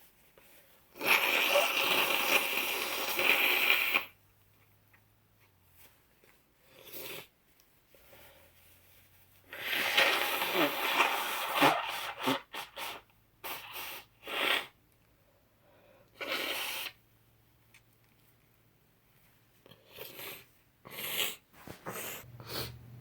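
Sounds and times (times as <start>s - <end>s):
woman clearing her nose: 1.0s - 2.7s.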